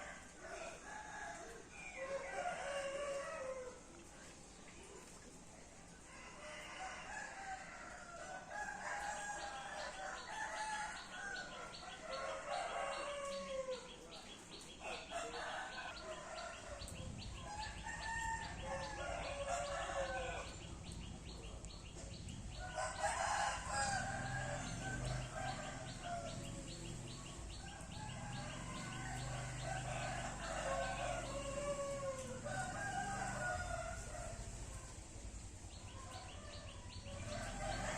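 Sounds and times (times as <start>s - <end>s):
roosters crowing: 14.9s - 20.7s, 22.5s - 34.8s, 35.9s - 37.9s.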